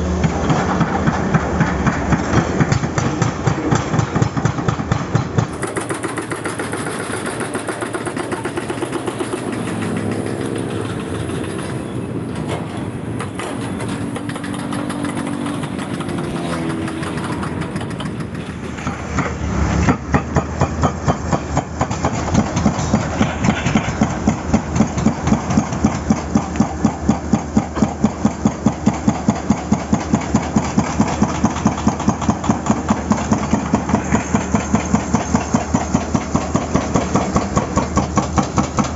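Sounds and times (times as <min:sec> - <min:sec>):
diesel engine running: 0:00.0 - 0:38.9
hydraulic breaker hammering: 0:00.0 - 0:38.9.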